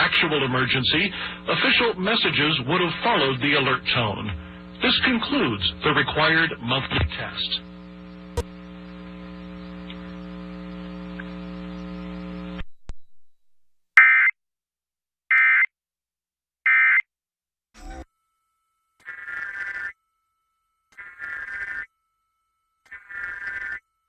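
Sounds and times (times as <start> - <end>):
electrical buzzing hum: 0.0 - 12.7, 17.8 - 23.8.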